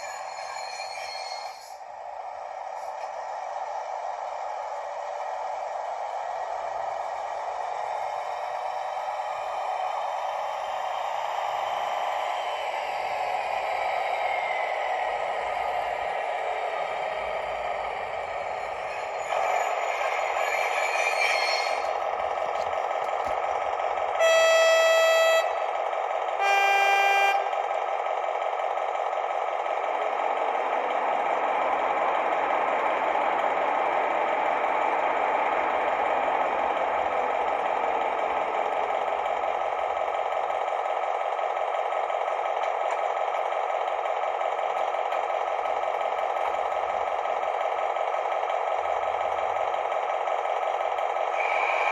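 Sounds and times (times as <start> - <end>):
model diesel engine running sound: 21.8 - 51.8
locomotive horn blasts: 24.2 - 25.7, 26.4 - 27.6.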